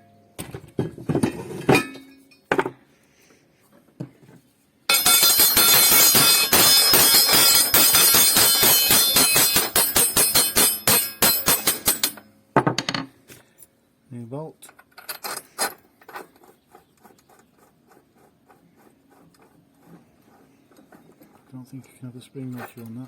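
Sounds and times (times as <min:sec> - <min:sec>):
metal clinking and jangling: 0:04.9 - 0:12.3.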